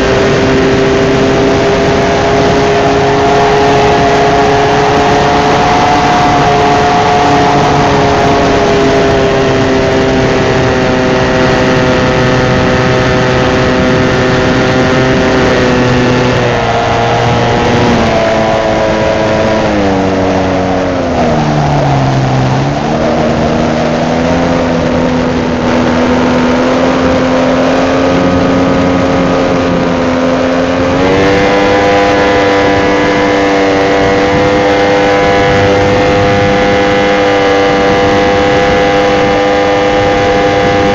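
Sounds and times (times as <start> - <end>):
rushing air: 13.3 - 33.3.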